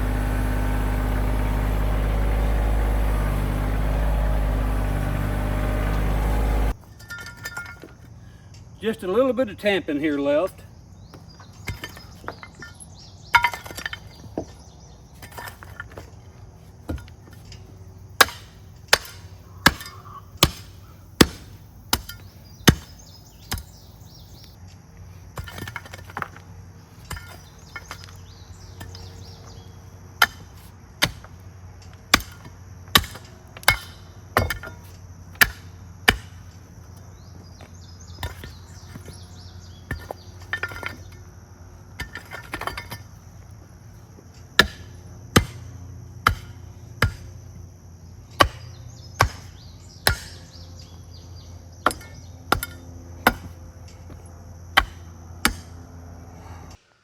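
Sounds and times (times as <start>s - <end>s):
tamping tool striking rocky soil: 18.2s - 23.8s, 25.3s - 29.4s, 30.2s - 36.5s, 38.1s - 41.3s, 42.0s - 43.2s, 44.6s - 47.4s, 48.4s - 50.6s, 51.8s - 55.8s.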